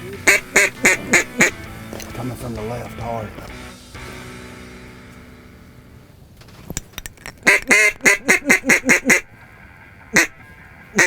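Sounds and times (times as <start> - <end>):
duck call quacks: 0.2 - 1.6, 7.4 - 9.3, 10.1 - 11.0.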